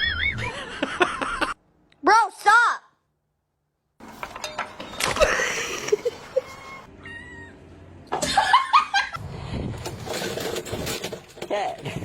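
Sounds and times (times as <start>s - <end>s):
cat meowing: 7.0s - 7.6s.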